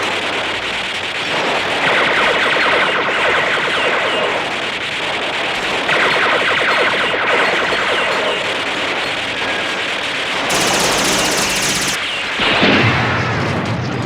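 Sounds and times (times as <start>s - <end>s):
rapid high clicking: 10.5s - 12.0s
automatic gunfire: 10.5s - 12.1s.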